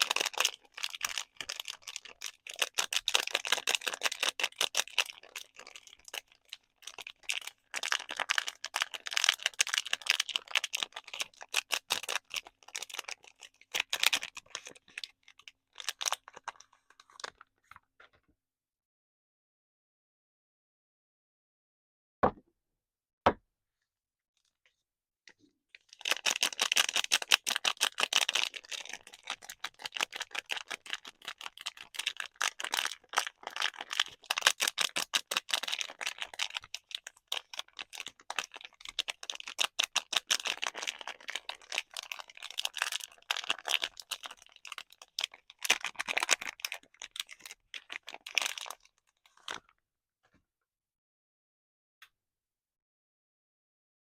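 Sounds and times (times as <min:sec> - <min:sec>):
packaging crinkling: 0:00.0 - 0:17.5, 0:25.8 - 0:49.6.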